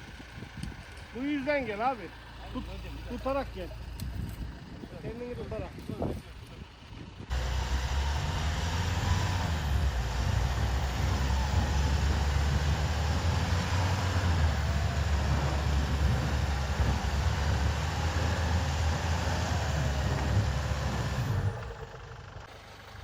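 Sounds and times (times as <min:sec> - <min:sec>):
vehicle engine low rumble: 0:00.0 - 0:23.0.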